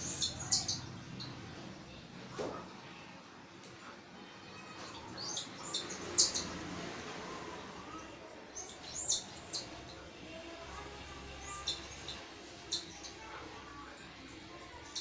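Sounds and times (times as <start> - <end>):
chicks begging chirps: 0.0 - 1.6, 4.8 - 6.7, 11.3 - 13.4.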